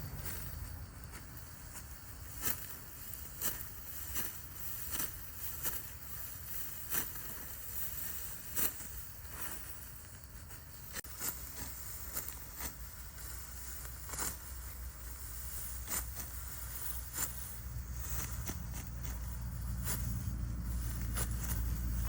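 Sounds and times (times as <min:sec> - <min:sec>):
low steady rumble: 0:00.0 - 0:06.9, 0:12.0 - 0:22.0
rice stalks rasping and snapping: 0:00.0 - 0:22.0.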